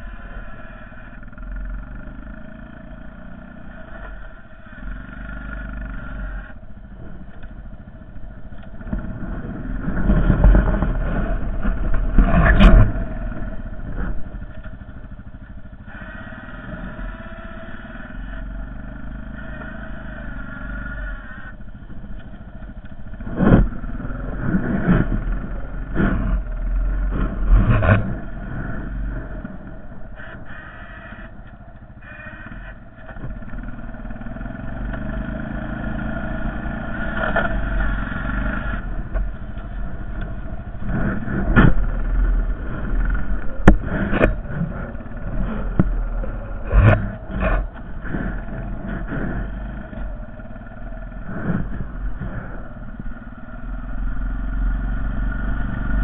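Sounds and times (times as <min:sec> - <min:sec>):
atv engine revving: 0:00.0 - 0:56.0.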